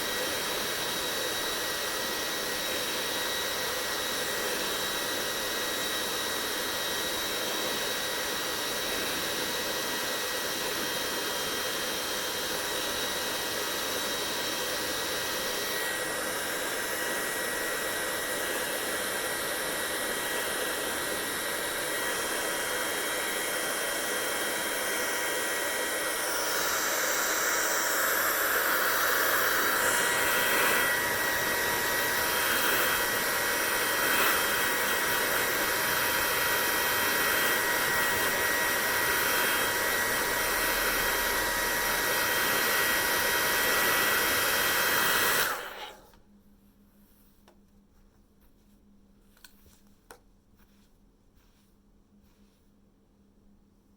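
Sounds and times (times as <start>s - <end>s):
hair dryer blowing: 0.0s - 46.2s.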